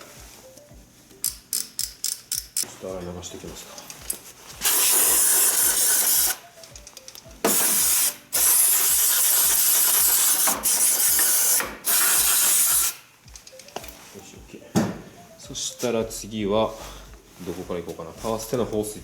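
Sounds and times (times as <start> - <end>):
aerosol spray hissing: 4.6 - 6.4, 7.5 - 13.0.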